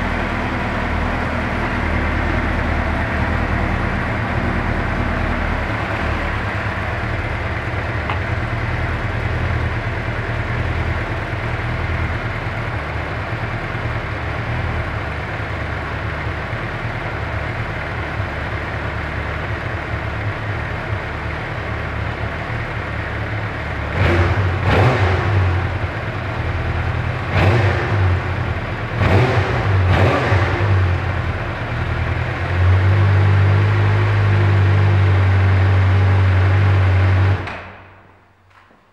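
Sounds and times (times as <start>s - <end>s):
motorcycle engine idling and revving: 0.0s - 38.7s.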